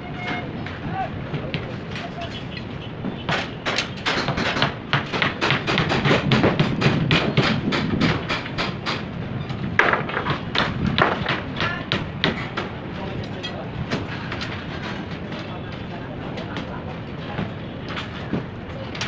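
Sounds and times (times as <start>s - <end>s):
rapid irregular knocks and taps: 3.0s - 9.1s, 9.8s - 12.8s.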